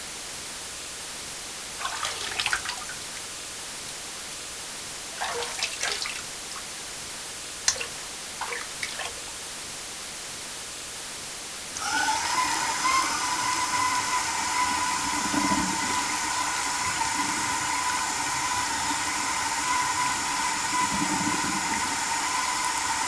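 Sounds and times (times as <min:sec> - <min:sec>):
steady hiss: 0:00.0 - 0:23.0
water dripping: 0:01.8 - 0:03.3, 0:05.1 - 0:06.8, 0:07.6 - 0:09.3, 0:11.8 - 0:23.0.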